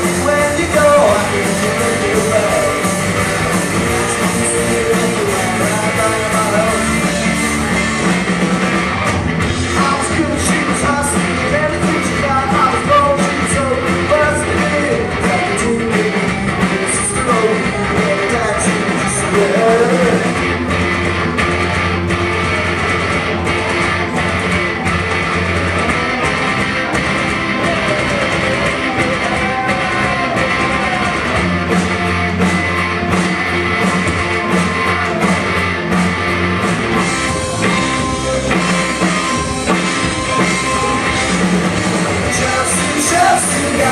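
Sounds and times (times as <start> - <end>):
person singing: 0.0 - 7.9, 9.7 - 20.4, 42.2 - 43.9
live rock band playing: 0.0 - 43.9.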